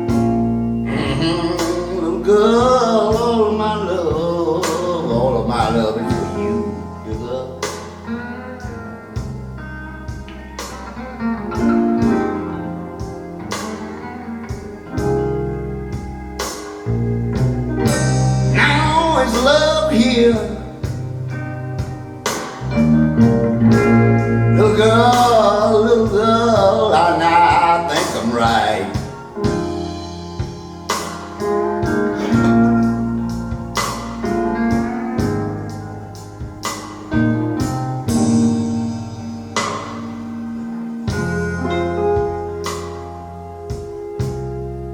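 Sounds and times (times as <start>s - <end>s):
guitar over bass: 0.0s - 44.9s
person singing: 0.8s - 9.3s, 17.8s - 21.2s, 24.4s - 35.8s
drum hits: 20.8s - 24.3s, 28.0s - 35.8s, 36.4s - 43.0s.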